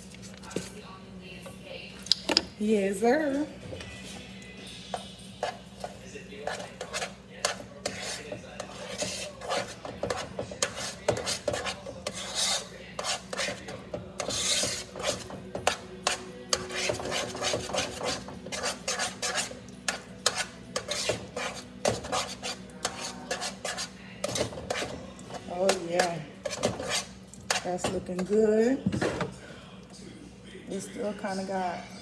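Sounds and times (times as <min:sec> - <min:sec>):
utensil scraping and knocking a pot: 0:04.9 - 0:29.3.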